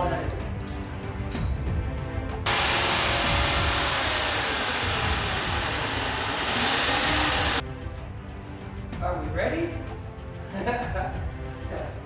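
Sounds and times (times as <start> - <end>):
machine rushing noise: 2.5 - 7.6.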